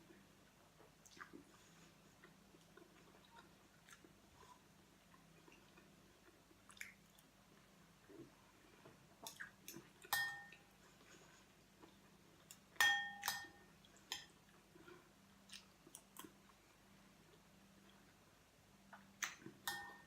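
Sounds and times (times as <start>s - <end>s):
soft chewing: 0.0s - 12.8s, 13.5s - 19.6s
spoon clinking against a bowl: 10.1s - 10.6s, 12.8s - 14.4s, 19.6s - 20.0s.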